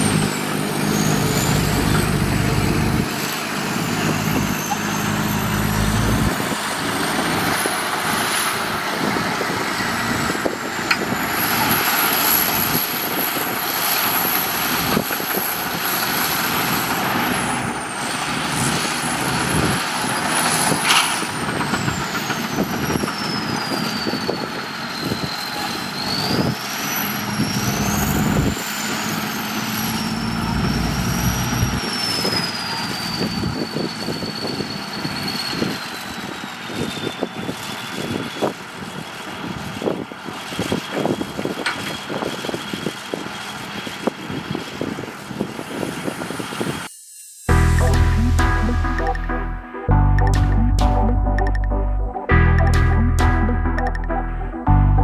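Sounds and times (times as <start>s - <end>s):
heavy diesel machinery drone: 0.0s - 46.9s, 47.5s - 55.0s
high whine sliding in pitch: 46.9s - 55.0s.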